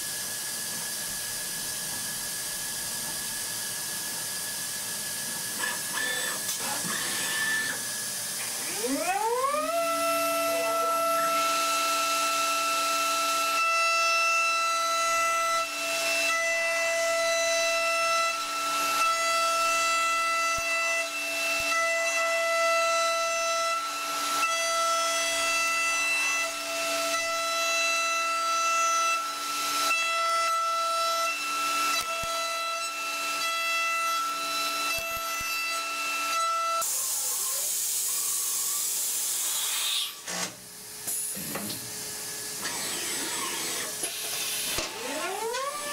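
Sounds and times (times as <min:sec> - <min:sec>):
machine high-pitched whine: 0:00.0 - 0:28.2, 0:31.2 - 0:45.9
hiss: 0:36.8 - 0:40.2.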